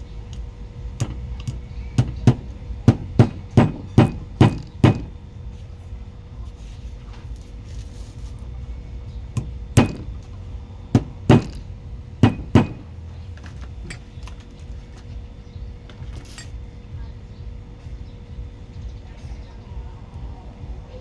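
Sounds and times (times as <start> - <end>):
low hum: 0.0 - 21.0
sharp knocks: 1.0 - 5.2, 9.4 - 10.3, 10.9 - 13.0.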